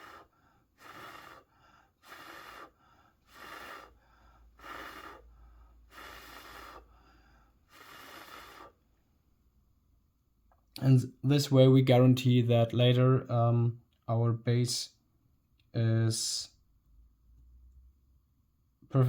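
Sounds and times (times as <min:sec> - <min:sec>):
person breathing: 0:00.0 - 0:09.0.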